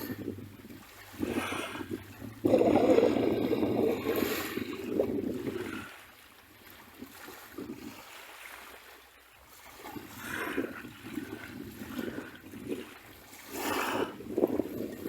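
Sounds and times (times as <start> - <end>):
wave breaking: 0.0 - 6.1
waves lapping on a beach: 0.0 - 15.0.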